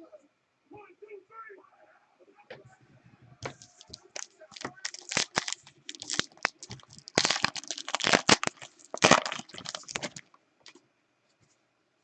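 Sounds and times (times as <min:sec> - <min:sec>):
wrapper tearing and crackling: 0:03.6 - 0:10.2.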